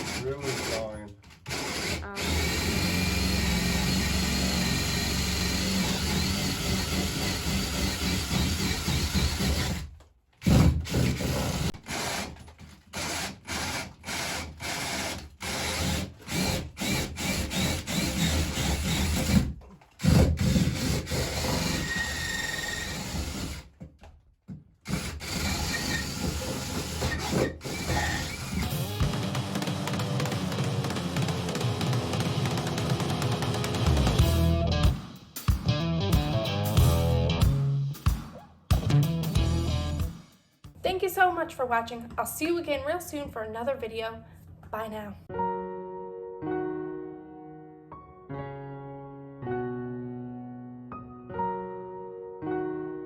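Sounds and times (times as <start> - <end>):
power drill boring: 0.0 - 23.7, 24.9 - 31.9.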